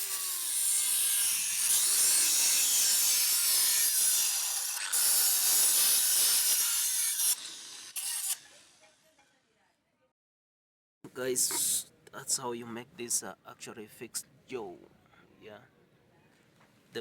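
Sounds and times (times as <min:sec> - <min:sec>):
angle grinder grinding steel: 0:00.0 - 0:08.9.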